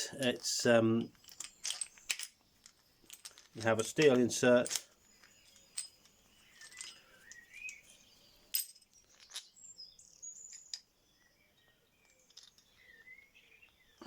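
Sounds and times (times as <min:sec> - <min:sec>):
faint birdsong chirping: 0:00.0 - 0:14.0
small metal parts clinking: 0:00.4 - 0:09.8, 0:10.4 - 0:10.9, 0:12.0 - 0:13.0.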